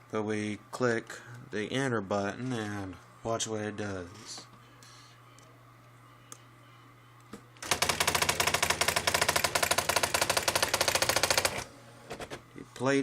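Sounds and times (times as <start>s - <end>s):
electronic typewriter printing: 7.6s - 12.4s.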